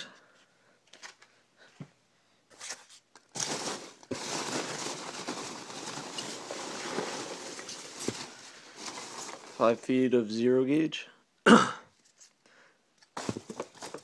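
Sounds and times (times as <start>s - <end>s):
plastic packaging crinkling: 2.6s - 9.8s, 13.1s - 14.0s.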